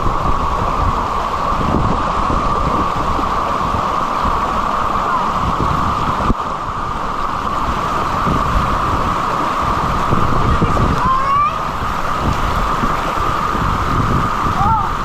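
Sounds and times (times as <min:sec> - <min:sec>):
water rushing in rapids: 0:00.0 - 0:15.0
wind on microphone: 0:00.0 - 0:15.0.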